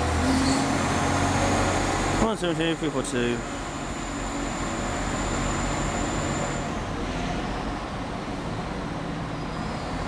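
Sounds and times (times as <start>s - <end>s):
diesel train engines running: 0.0s - 10.0s
thin high whine: 3.6s - 6.8s.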